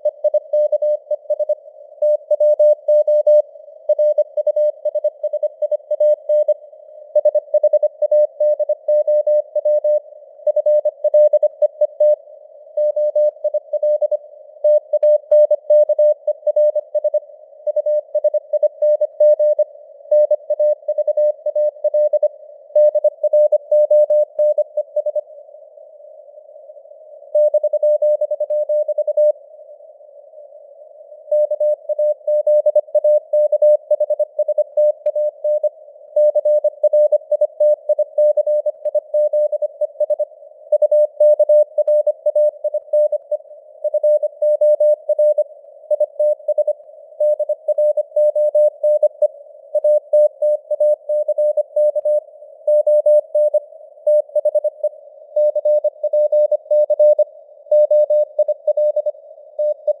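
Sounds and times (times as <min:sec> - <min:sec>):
morse code beeps: 0:49.8 - 1:00.0.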